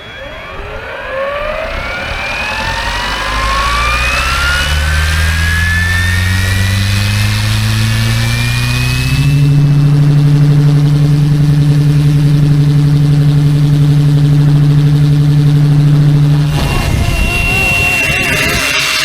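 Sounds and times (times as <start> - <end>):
rc helicopter motor whine: 0.0 - 10.0, 16.3 - 19.0.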